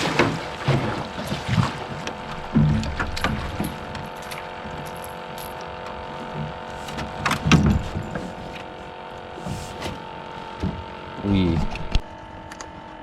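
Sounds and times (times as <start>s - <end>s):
knocks and clunks of gear: 1.4s - 8.7s, 9.4s - 12.8s.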